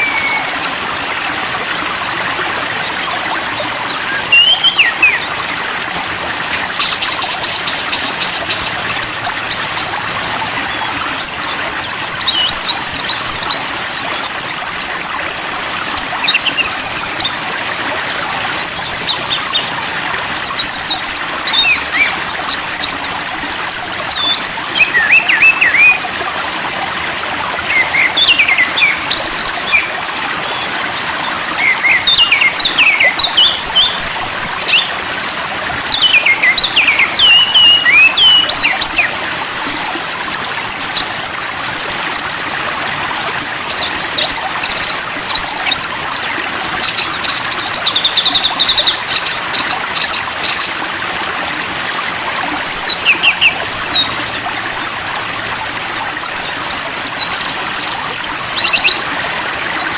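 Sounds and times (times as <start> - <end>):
running water: 0.0 - 59.9
songbird chirping and whistling: 4.1 - 5.3, 35.9 - 39.8.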